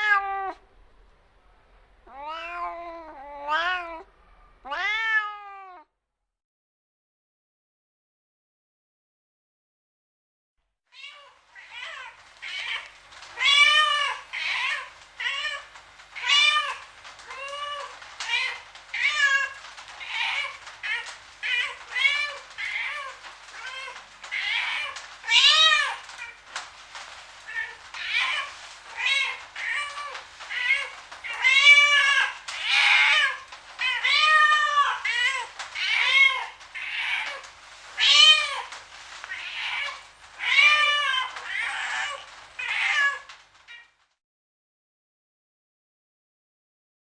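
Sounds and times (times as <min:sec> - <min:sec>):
cat meowing: 0:00.0 - 0:00.6, 0:02.0 - 0:05.9, 0:11.0 - 0:26.4, 0:27.5 - 0:44.0.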